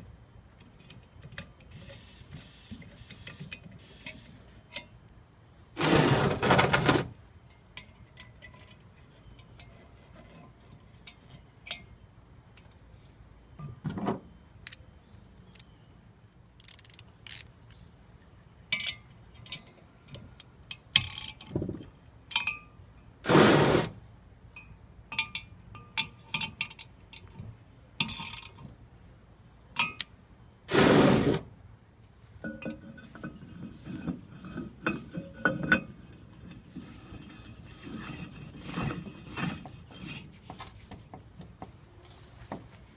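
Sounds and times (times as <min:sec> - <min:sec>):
metal parts clinking: 0:28.0 - 0:28.6.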